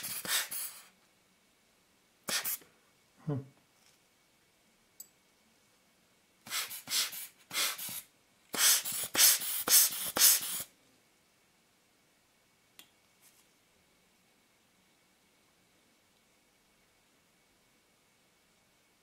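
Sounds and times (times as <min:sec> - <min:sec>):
air blower hissing puffs: 0:06.5 - 0:10.7.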